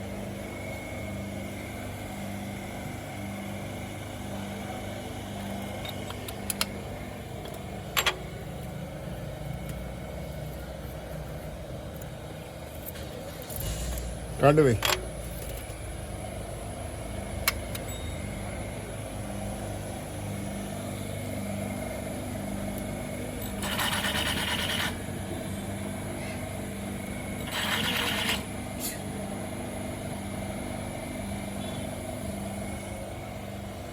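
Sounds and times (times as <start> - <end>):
click: 5.9 - 6.8.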